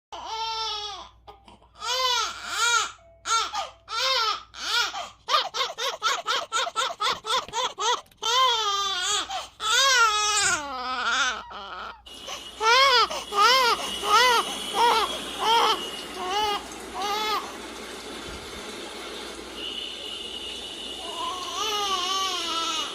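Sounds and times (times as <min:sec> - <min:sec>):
baby crying: 0:00.2 - 0:17.5, 0:21.0 - 0:22.9.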